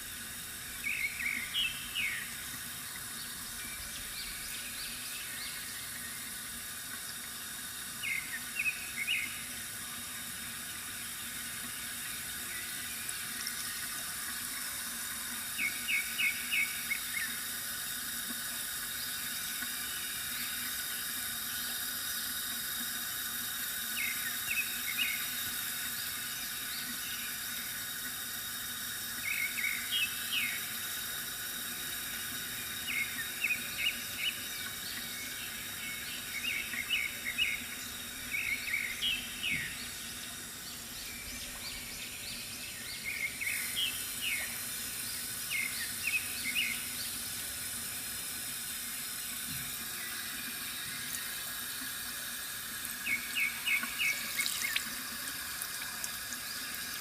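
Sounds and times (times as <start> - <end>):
water trickling from fountain: 0.0 - 57.0
small bird chirping: 0.8 - 2.3, 53.0 - 54.9.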